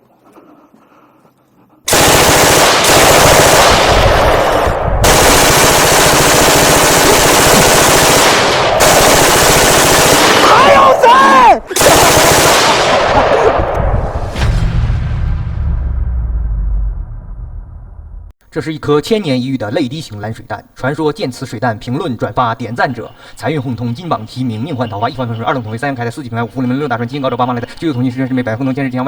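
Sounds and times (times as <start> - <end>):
machine gun automatic fire: 1.9 - 10.8, 11.8 - 13.7.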